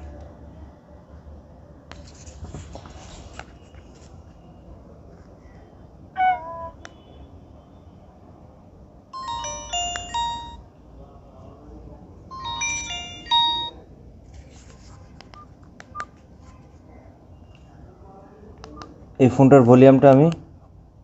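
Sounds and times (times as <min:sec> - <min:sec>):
phone electronic melody: 0:06.2 - 0:06.8, 0:09.2 - 0:10.6, 0:12.3 - 0:13.8.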